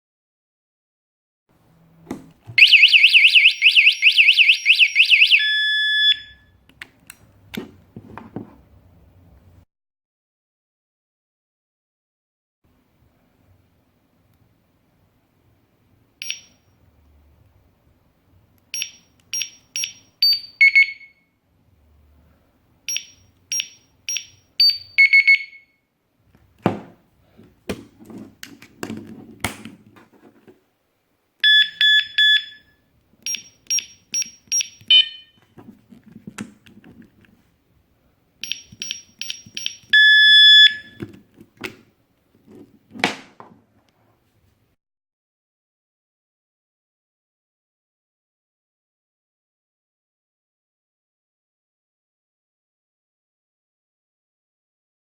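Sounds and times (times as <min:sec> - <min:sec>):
steady alarm tone: 0:02.6 - 0:06.4
electronic padlock beeps: 0:02.6 - 0:06.5, 0:16.2 - 0:16.6, 0:18.8 - 0:21.2, 0:22.9 - 0:25.8, 0:31.4 - 0:35.4, 0:38.4 - 0:41.0.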